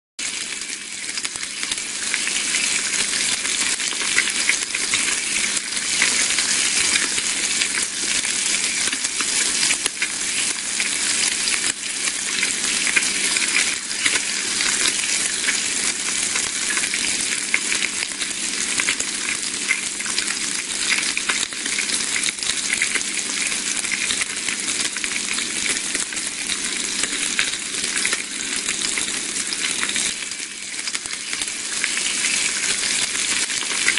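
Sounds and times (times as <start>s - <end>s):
bacon sizzling in a pan: 0.2s - 33.9s.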